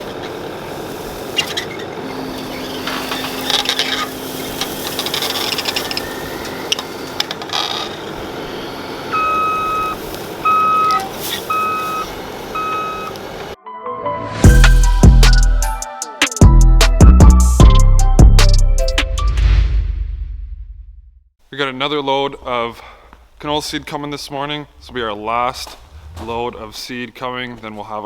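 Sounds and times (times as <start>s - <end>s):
heavy machinery running: 0.0s - 13.6s
reversing alarm beeping: 1.9s - 7.8s, 8.5s - 13.2s.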